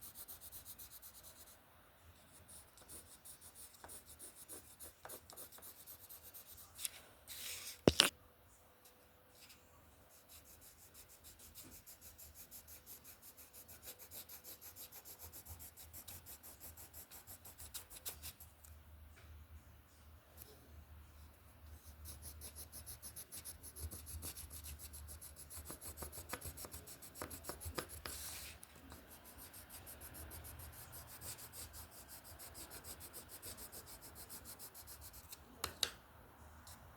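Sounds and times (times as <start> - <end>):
pencil scratching on paper: 0.0 - 1.6, 2.2 - 7.7, 10.1 - 18.4, 21.7 - 35.4.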